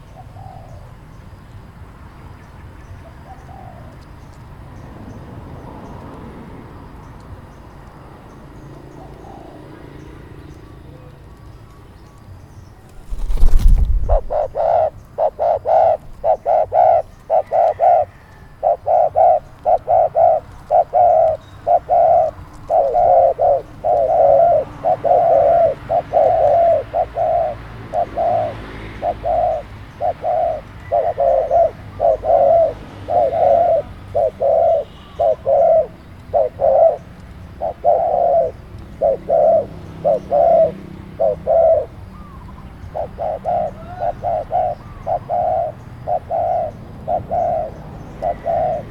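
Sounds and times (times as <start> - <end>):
dove cooing: 0.0 - 0.9, 13.0 - 48.9.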